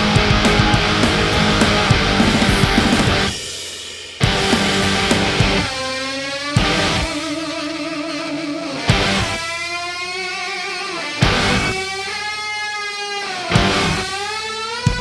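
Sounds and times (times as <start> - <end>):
electric guitar with vibrato: 0.0 - 3.4, 4.2 - 15.0
sharp drum hits: 0.0 - 5.7.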